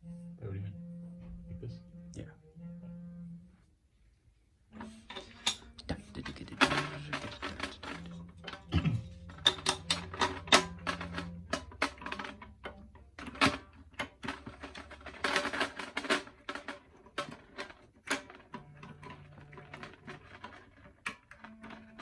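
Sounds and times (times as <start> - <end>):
snare drum hardware rattling: 5.1 - 22.0.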